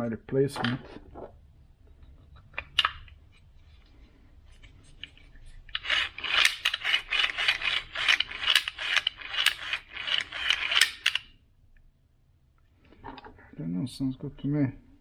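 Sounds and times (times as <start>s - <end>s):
plastic gears rasping and grinding: 4.4s - 11.3s.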